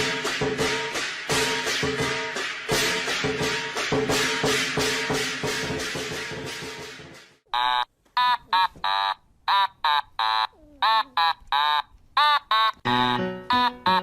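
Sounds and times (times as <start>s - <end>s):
music: 0.0s - 7.4s, 12.9s - 14.0s.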